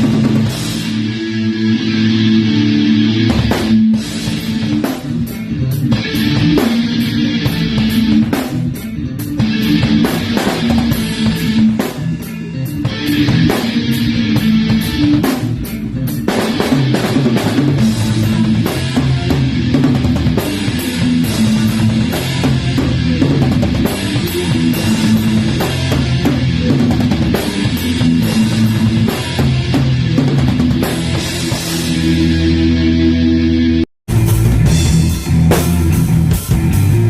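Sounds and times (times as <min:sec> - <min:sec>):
guitar and bass riff: 0:00.0 - 0:37.0
drum kit kick and cymbal hits: 0:34.1 - 0:37.0.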